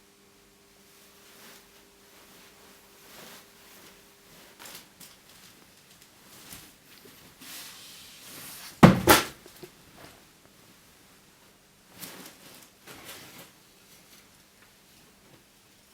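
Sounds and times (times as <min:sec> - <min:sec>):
soft rustling: 0:01.0 - 0:09.3
heavy double thump: 0:08.8 - 0:09.4.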